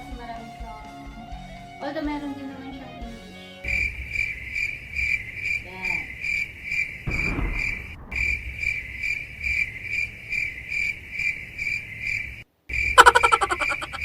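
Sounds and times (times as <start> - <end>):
crickets chirping: 3.6 - 14.0
low thud: 7.0 - 9.3.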